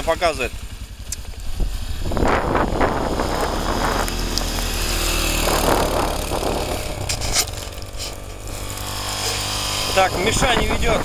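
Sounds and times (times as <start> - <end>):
small vehicle engine running: 0.0 - 11.0
rushing noise surges: 3.6 - 9.0.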